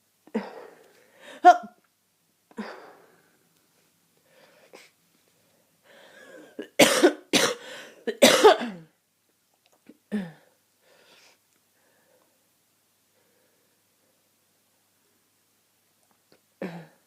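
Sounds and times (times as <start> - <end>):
person coughing: 6.2 - 8.9, 16.6 - 17.0
faint in-breath: 10.8 - 12.4.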